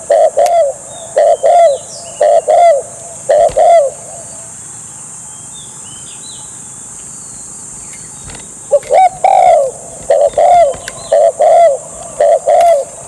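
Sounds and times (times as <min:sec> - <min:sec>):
dove cooing: 0:00.0 - 0:04.5, 0:07.7 - 0:13.0
small birds chirping: 0:00.0 - 0:13.0.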